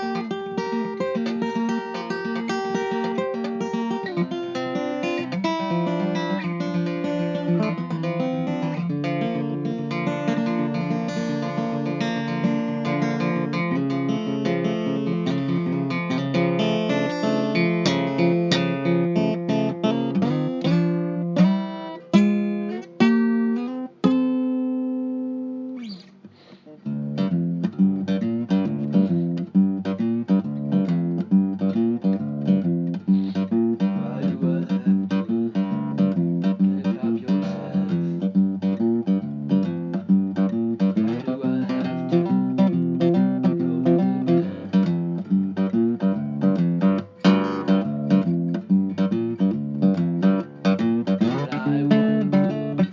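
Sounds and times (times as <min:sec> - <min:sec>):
acoustic guitar playing: 0:00.0 - 0:52.9.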